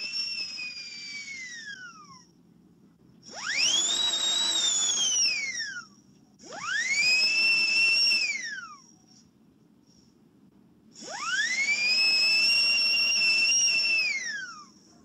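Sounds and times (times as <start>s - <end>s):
dentist's drill whining: 0.0s - 2.3s, 3.2s - 9.0s, 11.0s - 14.8s.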